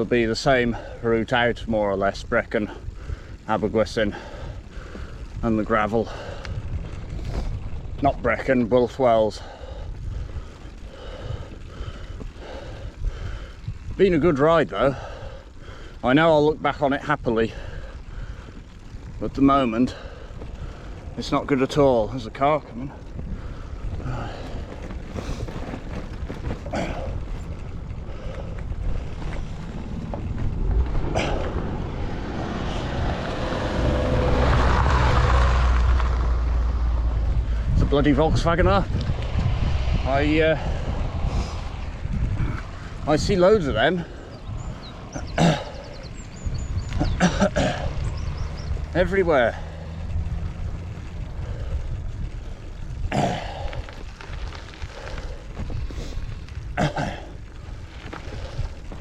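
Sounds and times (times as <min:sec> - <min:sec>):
wind buffeting microphone: 0:00.0 - 0:59.0
rider grunting: 0:02.5 - 0:07.9, 0:09.2 - 0:16.0, 0:17.3 - 0:35.5, 0:40.2 - 0:59.0
car approaching on road: 0:17.5 - 0:59.0.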